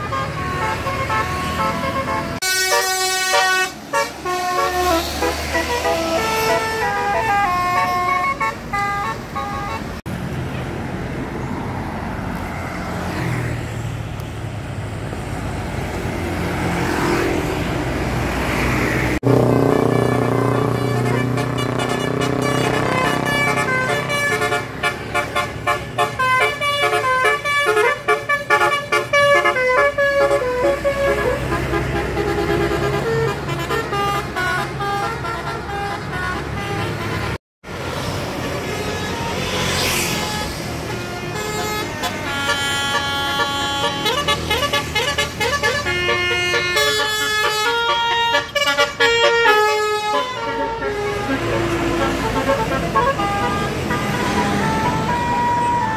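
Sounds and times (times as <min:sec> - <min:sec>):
musical bus horns playing tunes: 0:00.0 - 0:10.1, 0:19.2 - 0:37.4, 0:38.4 - 0:55.9
road noise: 0:00.0 - 0:55.9
bus engine running: 0:13.6 - 0:39.4, 0:40.2 - 0:55.9.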